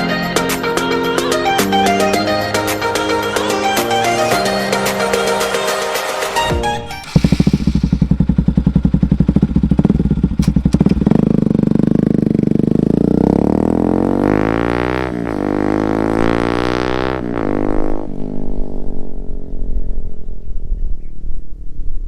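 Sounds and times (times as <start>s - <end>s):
motorcycle engine idling and revving: 6.8s - 20.8s.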